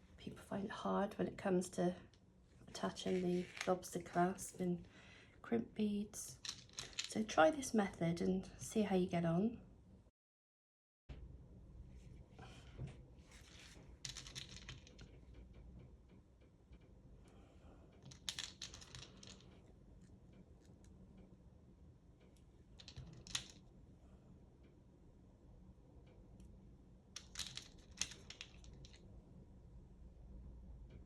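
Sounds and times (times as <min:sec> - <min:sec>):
small beads clicking and rattling: 0:06.3 - 0:07.2, 0:14.0 - 0:15.1, 0:18.0 - 0:19.6, 0:22.8 - 0:23.6, 0:27.2 - 0:29.0.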